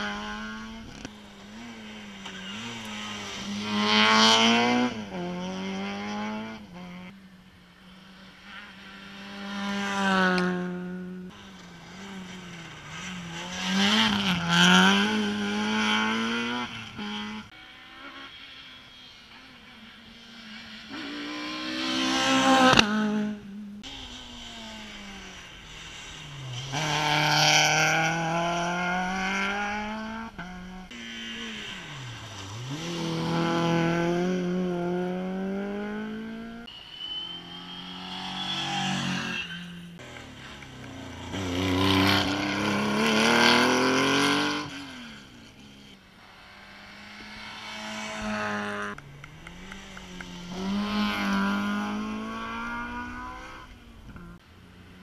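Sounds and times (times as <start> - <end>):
rally car engines revving: 0.0 - 55.0
tyre squeal: 36.7 - 42.9.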